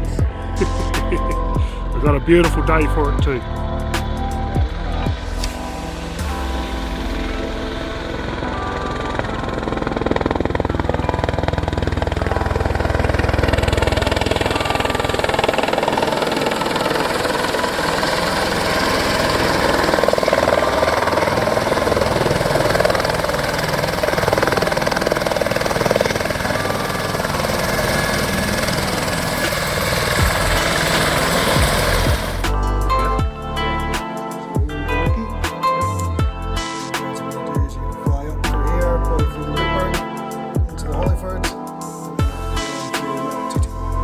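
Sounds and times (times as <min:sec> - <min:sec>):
helicopter turbine and rotor: 0:00.0 - 0:33.3
heavy low rumble: 0:28.2 - 0:33.9.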